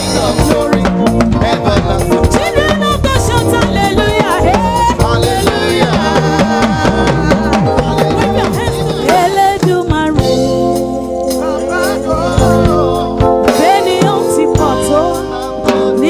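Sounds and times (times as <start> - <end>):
drum beat: 0.0 - 16.0
person singing: 0.0 - 16.0.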